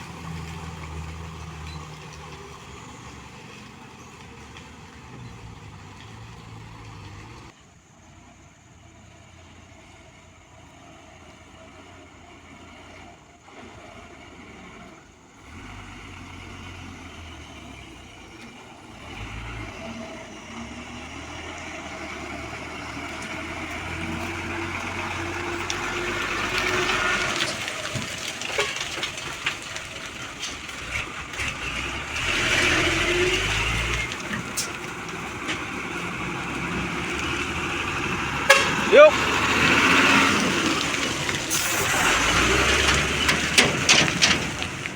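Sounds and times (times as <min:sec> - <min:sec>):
diesel truck engine under load: 0:00.0 - 0:44.9
knocks and rattles: 0:23.2 - 0:37.7, 0:40.5 - 0:44.9.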